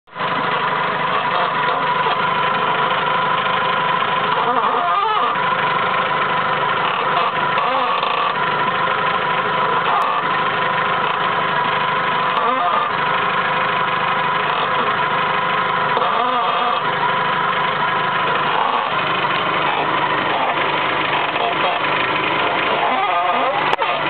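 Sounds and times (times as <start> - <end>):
car engine running: 0.0 - 24.0
steering creaks: 0.1 - 24.0.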